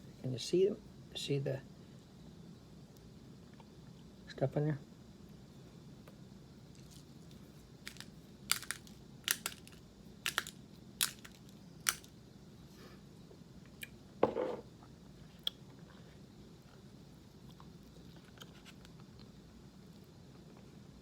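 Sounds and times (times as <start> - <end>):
peppercorns crunching: 6.7 - 12.1.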